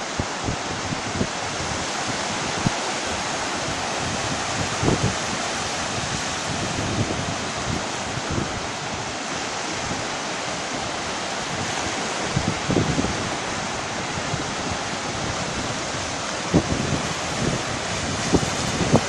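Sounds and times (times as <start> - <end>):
surf washing onto shore: 0.0 - 19.0
wind thumps on microphone: 3.6 - 9.1, 10.7 - 19.0.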